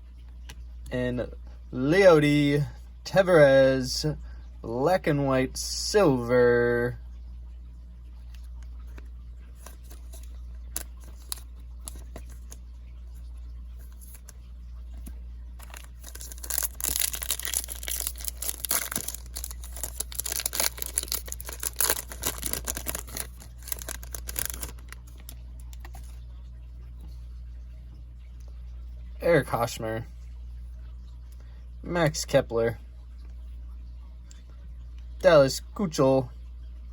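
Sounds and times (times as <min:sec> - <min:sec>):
low steady hum: 0:00.0 - 0:36.9
wrapper tearing and crinkling: 0:15.6 - 0:26.1.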